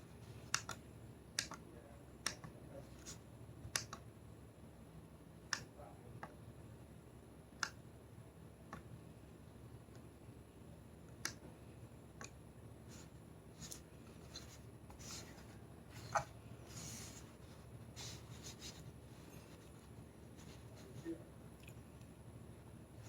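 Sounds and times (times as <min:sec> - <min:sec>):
soft rubbing swishes: 0:12.9 - 0:21.2.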